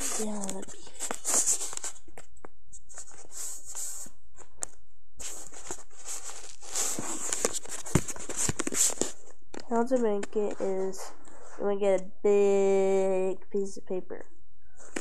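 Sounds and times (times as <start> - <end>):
paper rustling: 0.0 - 4.5, 5.2 - 11.4, 14.8 - 15.0.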